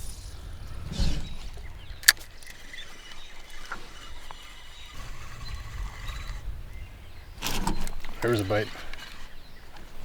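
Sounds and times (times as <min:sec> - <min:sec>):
low hiss: 0:00.0 - 0:09.5.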